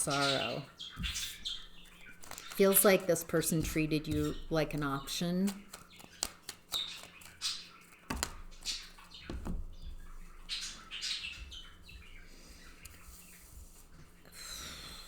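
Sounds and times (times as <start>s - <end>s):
birds chirping: 0.0s - 15.0s
soft thumps: 9.2s - 10.6s.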